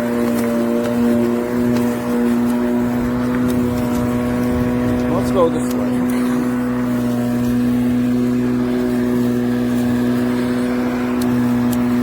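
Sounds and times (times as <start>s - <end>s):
electric lawn mower humming: 0.0s - 12.0s.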